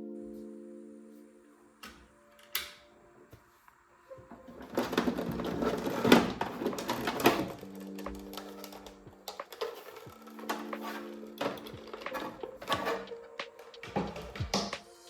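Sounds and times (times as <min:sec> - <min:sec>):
faint background music: 0:00.0 - 0:15.0
sewing machine rattling: 0:04.6 - 0:13.1.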